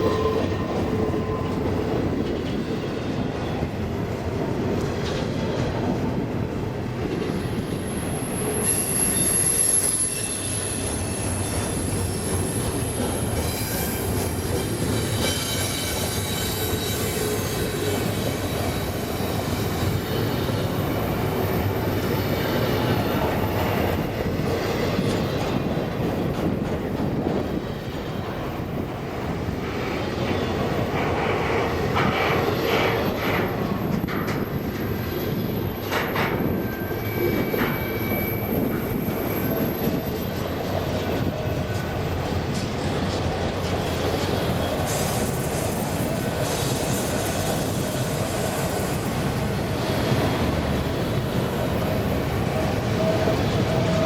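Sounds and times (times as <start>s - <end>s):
freight train cars rumbling: 0.0s - 54.0s
high wheel squeal: 7.8s - 24.0s, 34.5s - 40.6s.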